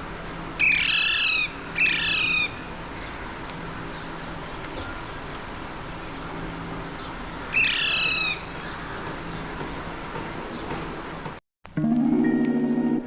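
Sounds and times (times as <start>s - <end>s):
parakeet harsh squawk: 0.6s - 2.6s, 7.5s - 8.5s
fainter bird calls: 0.6s - 9.6s.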